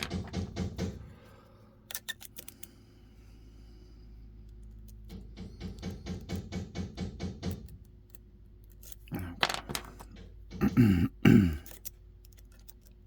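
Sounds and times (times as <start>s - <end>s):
man groaning: 9.1s - 9.6s.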